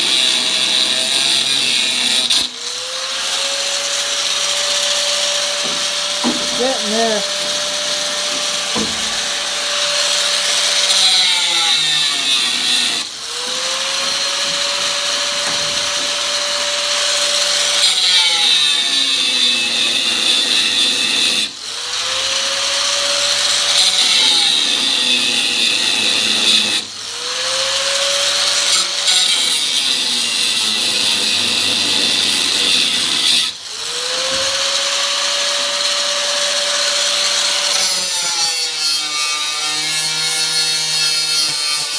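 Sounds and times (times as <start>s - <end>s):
power cutter cutting sheet metal: 0.0s - 41.9s.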